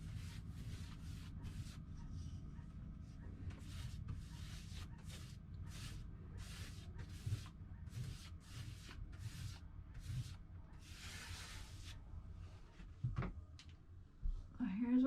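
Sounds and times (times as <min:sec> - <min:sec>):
paintbrush strokes swishing: 0:00.0 - 0:02.3, 0:03.4 - 0:12.0.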